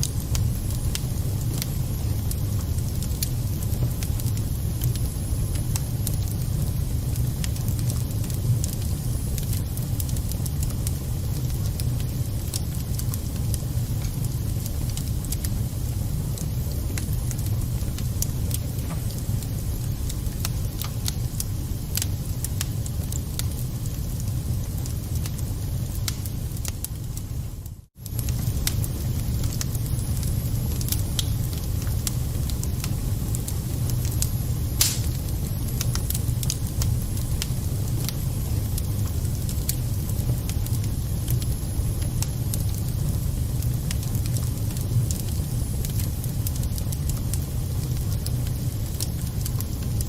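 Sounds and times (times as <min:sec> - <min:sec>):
fire flames rumbling: 0:00.0 - 0:50.0
wood crackling and popping: 0:00.0 - 0:50.0.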